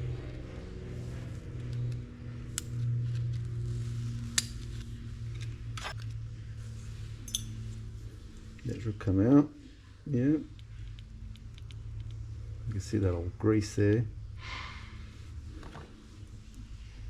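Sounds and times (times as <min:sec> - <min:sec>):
steady low hum: 0:00.0 - 0:17.0
metal reel parts clicking: 0:07.2 - 0:07.8.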